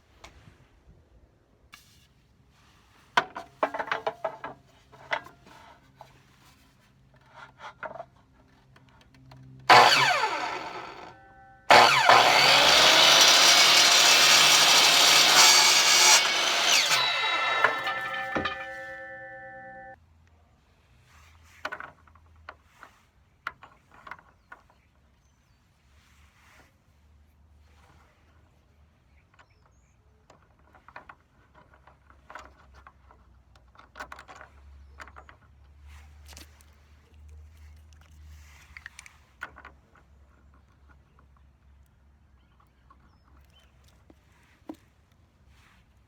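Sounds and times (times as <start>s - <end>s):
power tool cutting wood: 9.7s - 20.0s.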